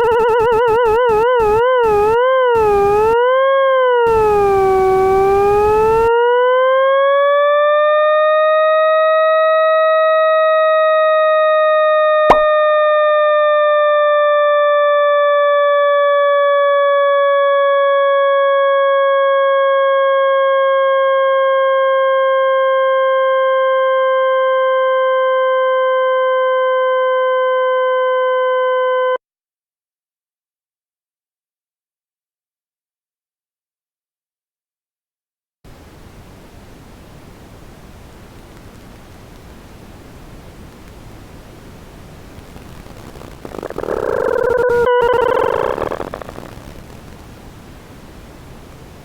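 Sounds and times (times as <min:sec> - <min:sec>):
sliding electronic tone: 0:00.0 - 0:03.2, 0:04.1 - 0:06.1, 0:12.3 - 0:12.5, 0:43.1 - 0:46.7
sharp click: 0:12.3 - 0:12.5.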